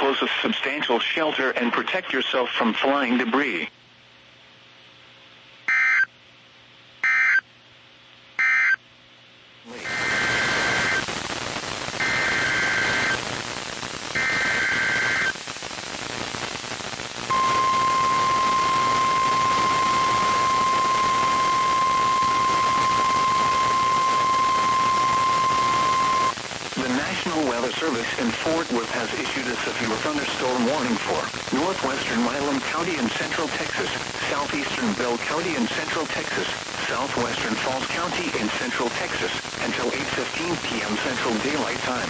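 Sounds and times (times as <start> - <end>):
radio hiss: 0.0 - 3.8, 9.6 - 42.0
digital data bursts: 9.7 - 13.4, 14.0 - 15.4, 17.3 - 42.0.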